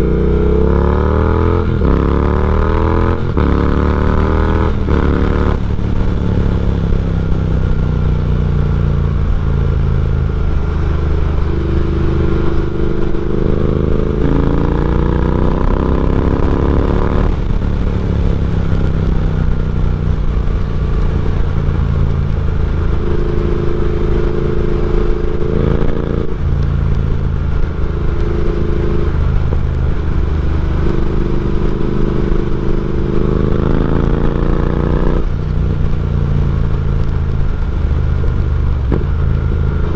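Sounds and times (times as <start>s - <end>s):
loud motorcycle engine running: 0.0s - 39.9s.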